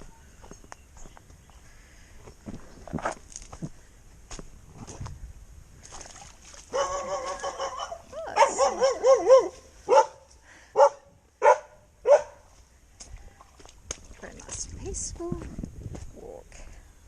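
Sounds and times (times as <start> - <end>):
dog barking: 6.7 - 12.4.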